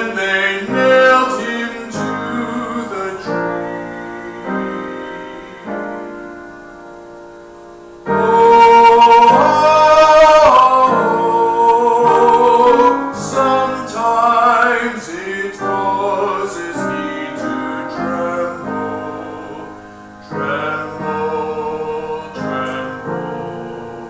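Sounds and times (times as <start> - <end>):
solo voice singing long notes: 0.0 - 6.2, 8.1 - 24.0
instrumental accompaniment: 0.0 - 14.8.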